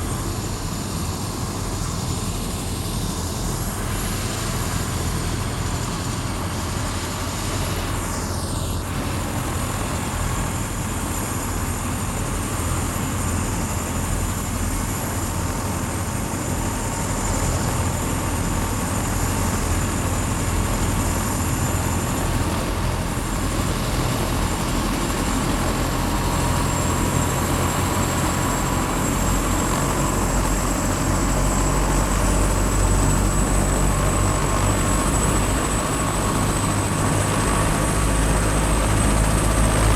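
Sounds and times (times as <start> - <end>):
helicopter low drone: 0.0 - 39.9
helicopter thin whine: 0.0 - 39.9.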